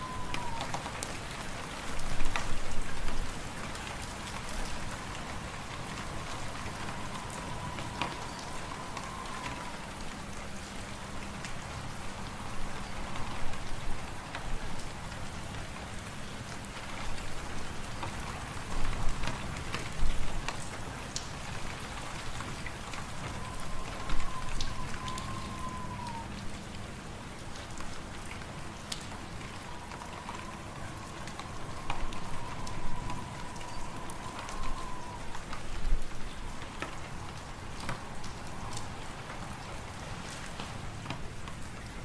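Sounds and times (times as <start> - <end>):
faint wavering whistle: 0.0 - 0.8, 4.7 - 10.1, 22.9 - 26.5, 29.1 - 40.2
low wind: 0.0 - 42.0.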